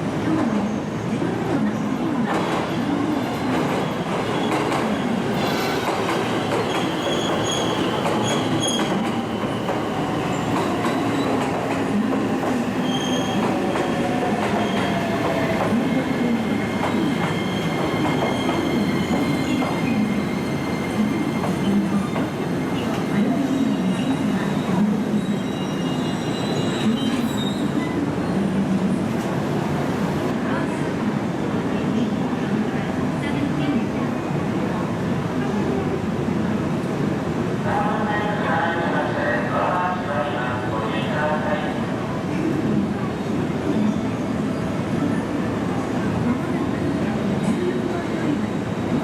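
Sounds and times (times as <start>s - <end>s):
train wheels squealing: 3.8s - 11.5s, 12.6s - 13.8s, 16.7s - 28.4s.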